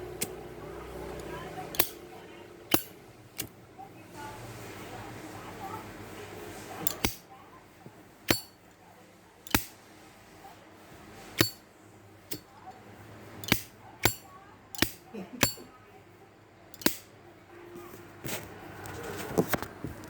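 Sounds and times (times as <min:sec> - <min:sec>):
lighter lid clacking open and shut: 0:01.7 - 0:02.0, 0:02.7 - 0:03.5, 0:06.8 - 0:07.2, 0:08.3 - 0:08.5, 0:09.5 - 0:09.7, 0:11.4 - 0:11.6, 0:13.4 - 0:14.2, 0:14.8 - 0:15.6, 0:16.8 - 0:17.1.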